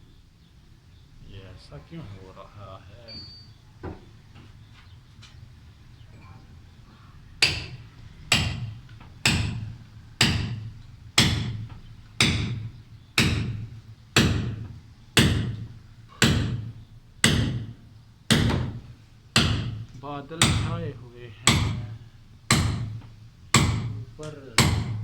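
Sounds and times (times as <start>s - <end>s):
hammer striking chisel on concrete: 7.4s - 18.8s, 21.5s - 21.9s, 22.5s - 23.0s, 23.6s - 24.0s, 24.6s - 25.0s.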